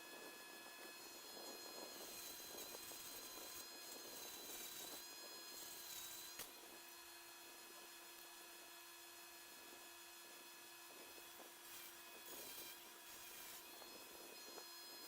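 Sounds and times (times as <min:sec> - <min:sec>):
rotary tool whine: 0:00.0 - 0:08.5, 0:09.4 - 0:15.0.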